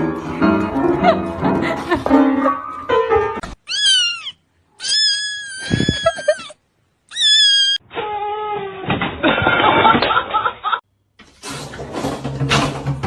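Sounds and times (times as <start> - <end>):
music: 0.0 - 3.4, 11.5 - 13.0
cat meowing: 3.7 - 8.6.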